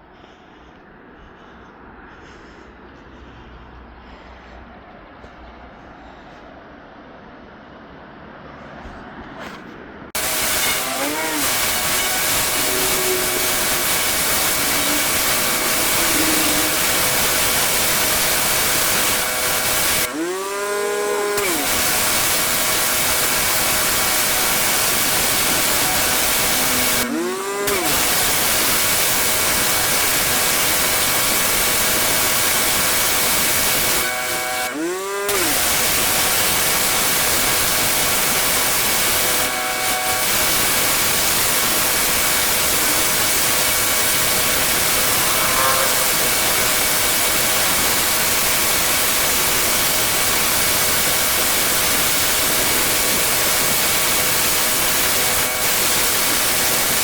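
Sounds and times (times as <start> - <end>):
machine whine: 10.2 - 57.0
pressure washer spraying water: 10.2 - 57.0
sweeping tone: 44.2 - 48.4.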